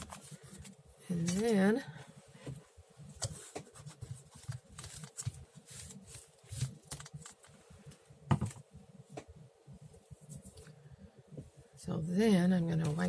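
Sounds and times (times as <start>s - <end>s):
paper rustling: 3.2s - 7.6s.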